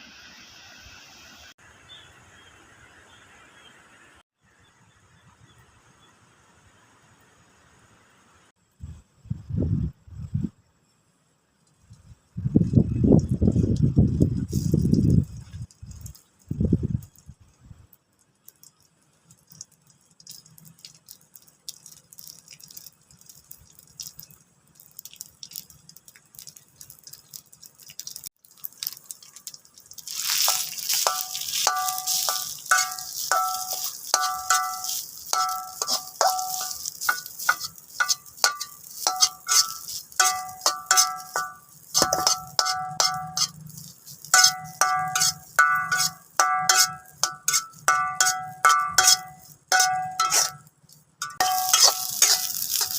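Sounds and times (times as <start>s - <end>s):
steady hiss: 17.3s - 52.9s
metal utensil clinking on dish: 30.4s - 50.6s, 51.2s - 52.9s.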